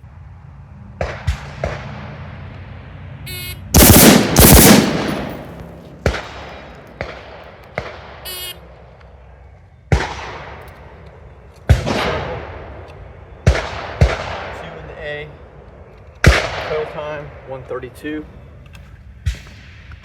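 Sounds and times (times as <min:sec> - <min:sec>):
loud gunshots with echo: 0:03.8 - 0:08.2.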